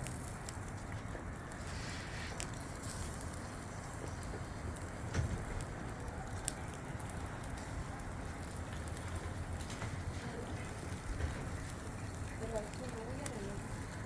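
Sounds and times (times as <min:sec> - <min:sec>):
charcoal crackles and pops: 0:00.0 - 0:14.0
fish sizzling on charcoal: 0:00.0 - 0:14.0.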